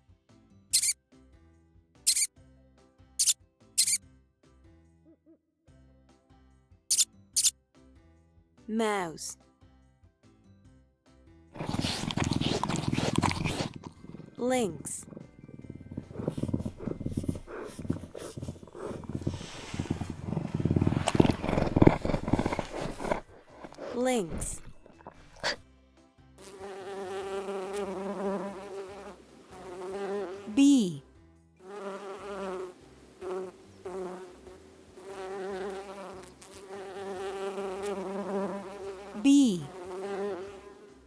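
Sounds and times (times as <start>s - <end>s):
bee buzzing in flight: 0.8s - 1.0s, 2.1s - 2.3s, 3.2s - 4.0s, 6.9s - 7.5s, 11.6s - 25.6s, 26.5s - 30.5s, 31.7s - 41.0s
lynx growling: 11.6s - 25.6s.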